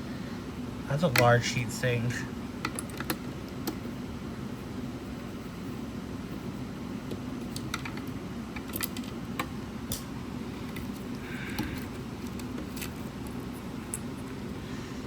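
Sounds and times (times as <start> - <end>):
steady low background hum: 0.0 - 15.0.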